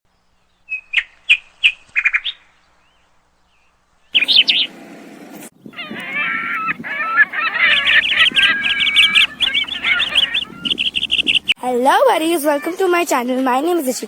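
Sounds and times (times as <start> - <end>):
birds chirping: 2.9 - 14.0
chorus of many birds: 4.2 - 11.6.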